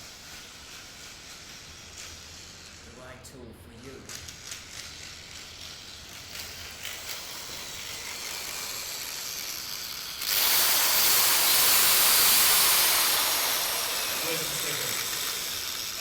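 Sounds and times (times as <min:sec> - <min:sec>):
tool hissing: 0:04.2 - 0:16.0.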